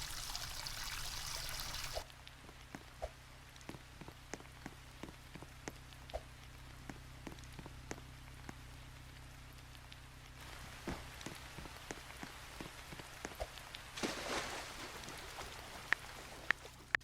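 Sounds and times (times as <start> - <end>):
water pouring: 0.0 - 2.1
water dripping: 0.0 - 17.0
small ticks: 2.0 - 10.4, 15.3 - 17.0.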